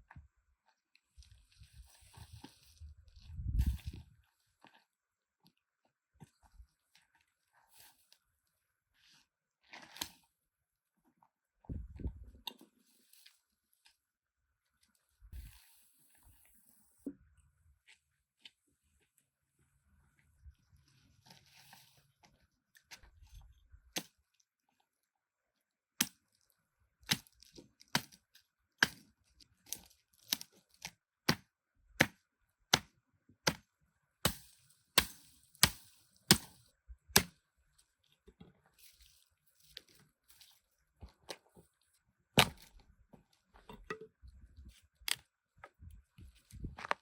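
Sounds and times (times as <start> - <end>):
sharp chopping strikes: 34.3 - 36.6.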